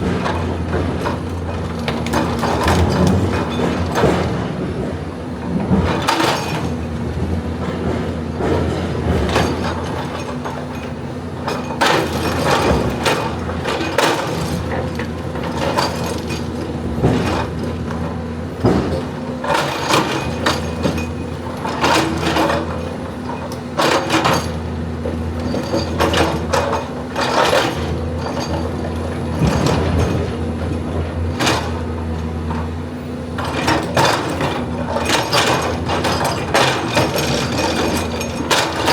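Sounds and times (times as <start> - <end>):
excavator diesel engine running: 0.0 - 38.9
machine clanks and scrapes: 0.0 - 38.9.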